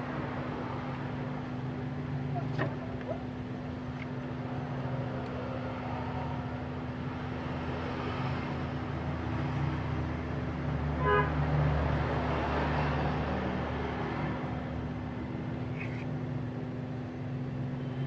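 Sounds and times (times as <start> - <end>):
road traffic rumble: 0.0 - 18.0
vehicle horn toot: 11.0 - 11.4.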